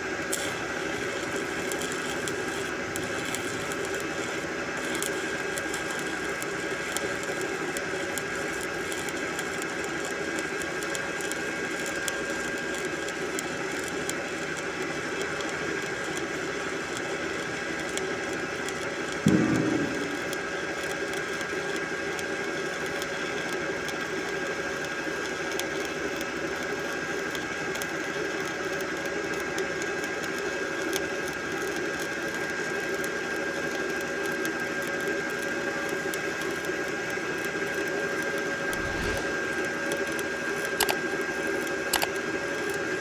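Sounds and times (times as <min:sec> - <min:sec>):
welding arc crackling: 0:38.7 - 0:39.6.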